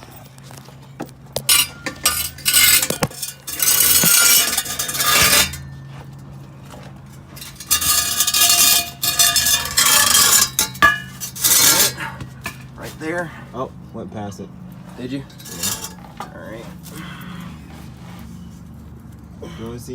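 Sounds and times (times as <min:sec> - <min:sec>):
steady low hum: 0:01.2 - 0:19.9
metal scraping and clanking: 0:01.4 - 0:06.1, 0:06.7 - 0:13.2, 0:14.8 - 0:18.4.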